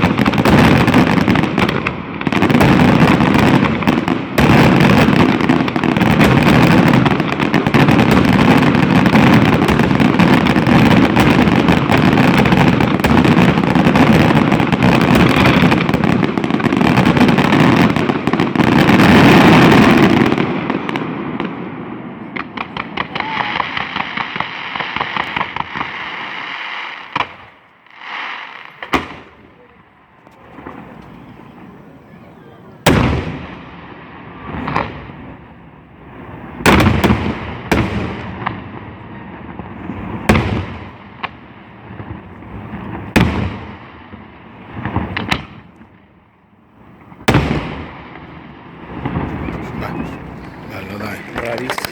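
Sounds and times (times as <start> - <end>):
fireworks bangs and crackle: 0.0 - 51.9
loud firework bangs: 0.0 - 51.9.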